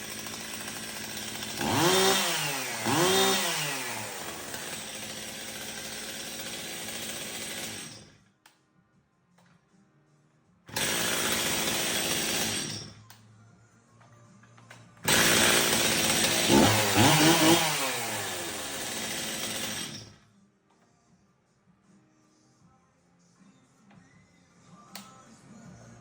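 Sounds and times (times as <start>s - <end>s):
chainsaw engine revving: 0.0s - 8.0s, 10.7s - 12.9s, 15.0s - 20.1s.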